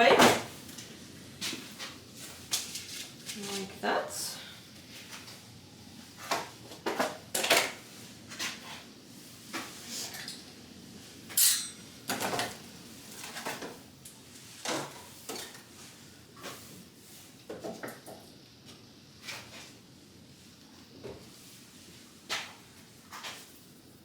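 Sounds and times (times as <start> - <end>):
garden pots clattering and knocking: 17.5 - 18.3.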